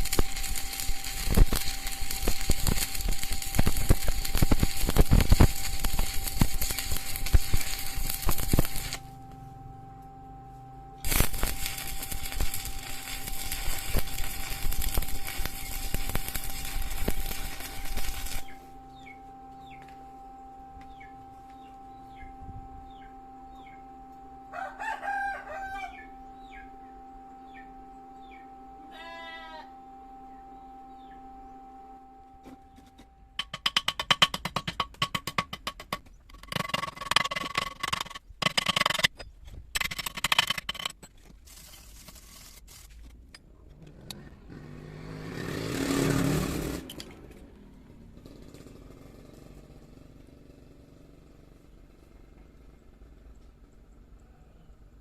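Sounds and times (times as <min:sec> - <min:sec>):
welding arc crackling: 0:00.0 - 0:09.3, 0:11.0 - 0:20.0, 0:33.4 - 0:39.2, 0:39.8 - 0:43.0, 0:44.1 - 0:48.9
steady low hum: 0:00.0 - 0:41.2.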